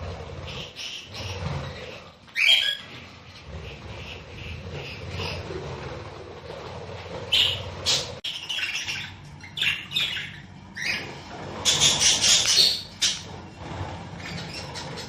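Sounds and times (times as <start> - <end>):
budgerigars chirping and chattering: 0.4 - 5.9, 7.3 - 15.0.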